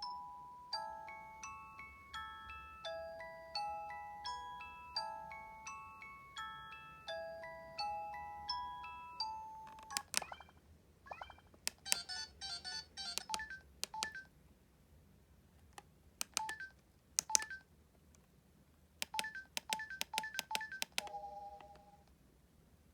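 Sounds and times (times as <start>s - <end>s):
phone key clicks: 9.6s - 10.3s, 11.6s - 12.2s, 13.0s - 14.2s, 15.6s - 17.6s, 19.0s - 21.8s.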